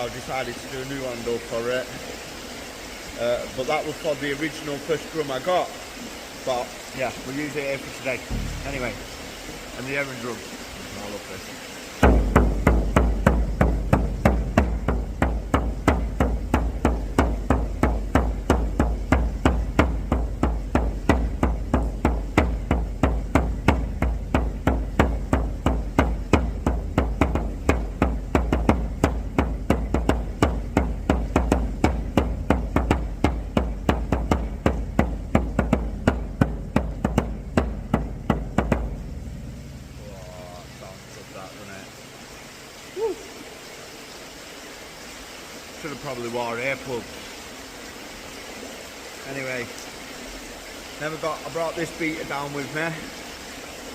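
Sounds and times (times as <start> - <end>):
deep drum beats: 8.1 - 10.2, 12.0 - 41.1.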